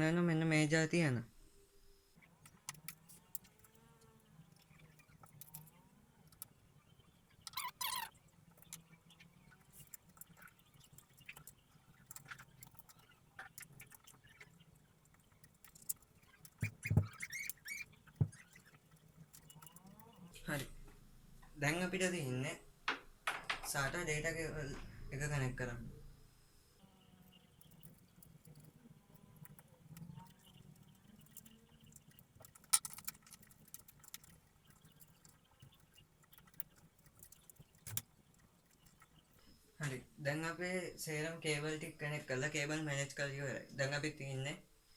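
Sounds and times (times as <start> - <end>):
small clicks and taps: 2.4 - 6.5, 9.6 - 20.2, 27.5 - 39.4
knocks and thumps: 16.6 - 17.3.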